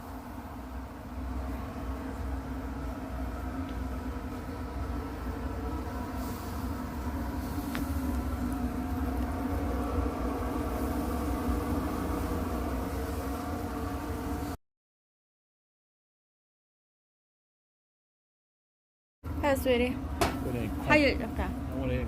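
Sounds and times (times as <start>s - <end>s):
mechanical hum with tones: 0.0s - 14.6s, 19.3s - 22.0s.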